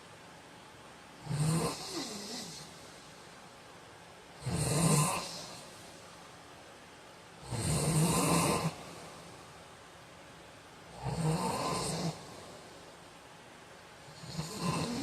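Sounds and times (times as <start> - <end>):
man snoring: 1.2 - 2.8, 4.4 - 5.7, 7.4 - 9.1, 10.9 - 12.7, 14.1 - 15.0.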